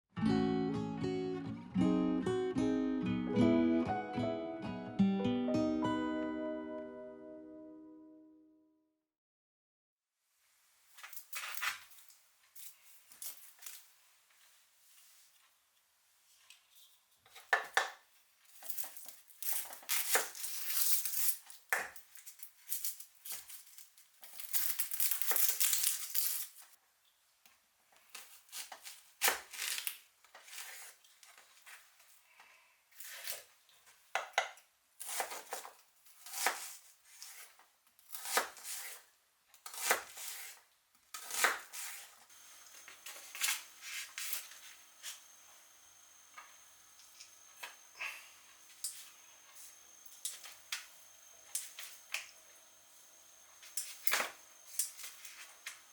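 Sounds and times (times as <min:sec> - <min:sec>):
packaging rustling and tearing: 0:18.5 - 0:26.8, 0:28.2 - 0:31.8.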